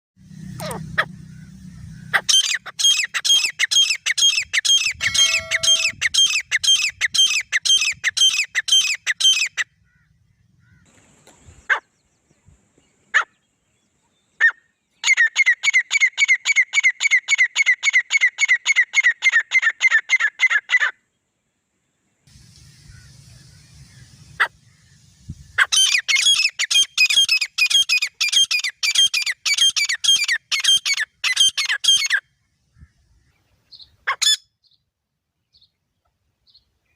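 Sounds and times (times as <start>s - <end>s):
francolins calling: 0.2s - 12.2s, 22.3s - 34.8s.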